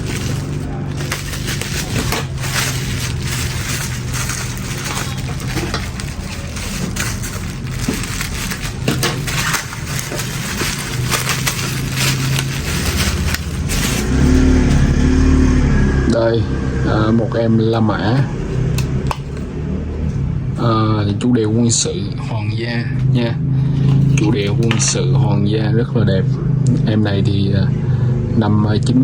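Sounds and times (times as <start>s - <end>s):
plastic wrapping tearing and crinkling: 0.0s - 15.1s
low engine hum: 0.0s - 29.0s.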